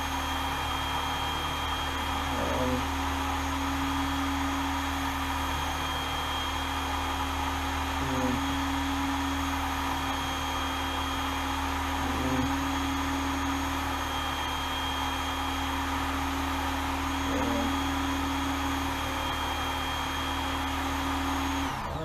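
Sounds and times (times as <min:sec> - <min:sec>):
belt sharpener motor running: 0:00.0 - 0:22.0.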